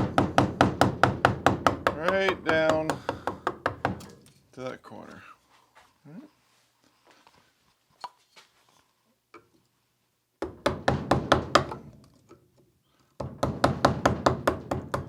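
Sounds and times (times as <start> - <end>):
mallet tapping gouge into wood: 0.0 - 4.1.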